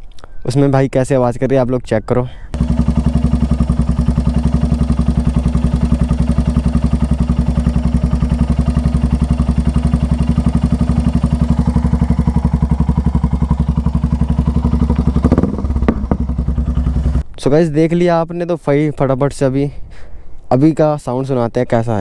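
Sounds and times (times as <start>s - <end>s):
engine clattering: 2.6s - 17.2s
motorcycle engine running: 2.6s - 17.2s.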